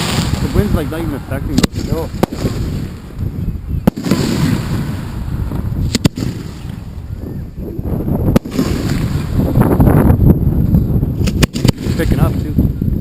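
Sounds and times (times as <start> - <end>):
fireworks shells exploding: 0.0 - 7.1, 8.2 - 10.0, 11.2 - 12.6
steady low rumble: 0.0 - 13.0.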